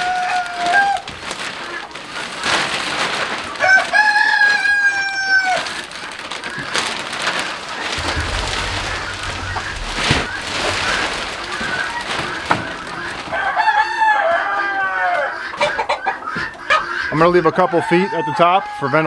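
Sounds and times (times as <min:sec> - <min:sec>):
steady crackling rustle: 0:00.0 - 0:17.6
rooster crowing: 0:08.1 - 0:18.8.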